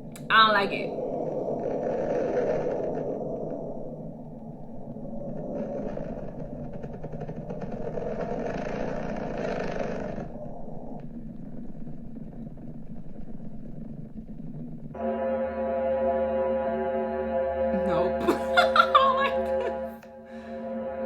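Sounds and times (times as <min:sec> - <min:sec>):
crackling hiss: 0:00.0 - 0:15.0
eerie rumbling drone: 0:00.0 - 0:21.0
steady ringing tone: 0:14.9 - 0:21.0.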